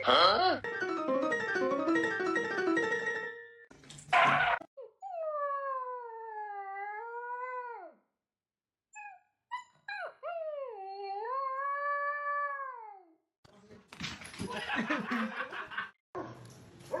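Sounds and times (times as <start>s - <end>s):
dog yipping: 9.0s - 10.8s.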